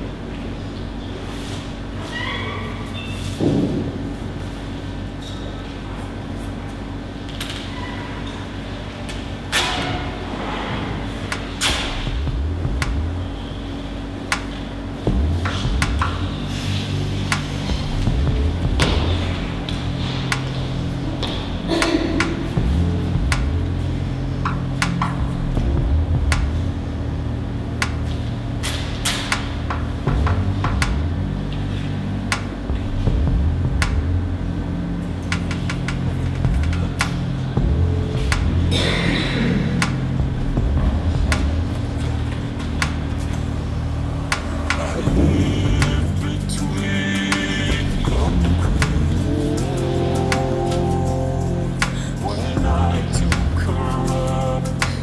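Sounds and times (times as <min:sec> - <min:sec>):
low steady drone: 0:00.0 - 0:55.0
steady low hum: 0:00.0 - 0:55.0.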